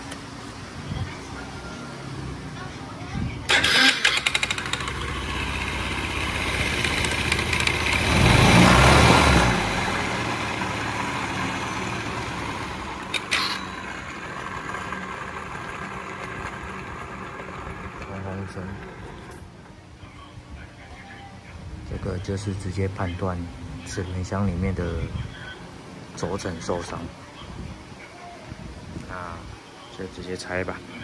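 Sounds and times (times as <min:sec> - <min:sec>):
scooter engine starting and revving: 0:03.5 - 0:19.5.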